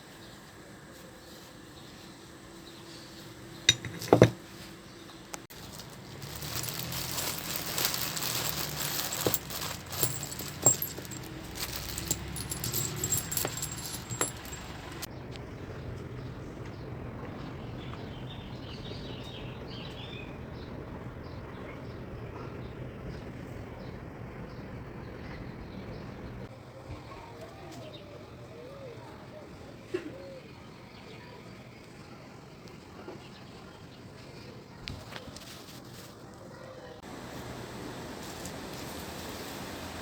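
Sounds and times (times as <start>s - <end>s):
small metal objects clinking: 3.7s - 4.4s, 5.5s - 15.1s.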